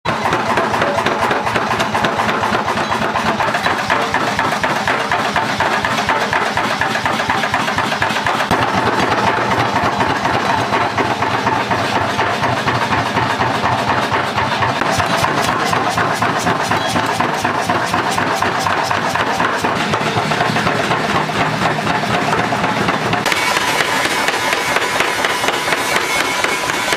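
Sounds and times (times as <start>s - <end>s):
motor-driven machine running: 8.2s - 26.9s.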